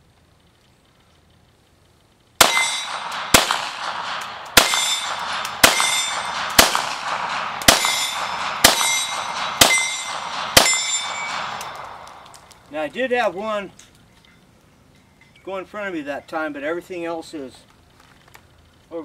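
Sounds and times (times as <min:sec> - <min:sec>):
pistol shots: 0:02.4 - 0:12.7.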